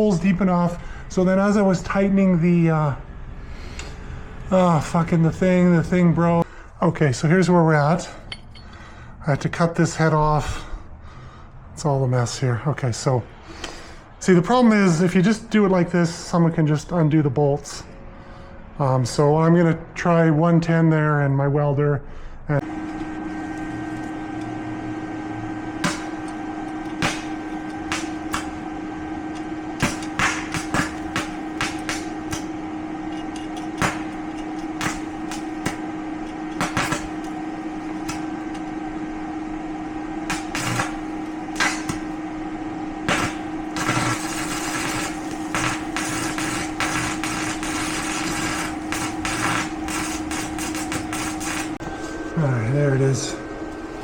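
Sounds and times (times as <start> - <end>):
welder humming: 0.0 - 6.5, 22.5 - 54.0
welding arc crackling: 22.6 - 39.3, 40.0 - 52.1.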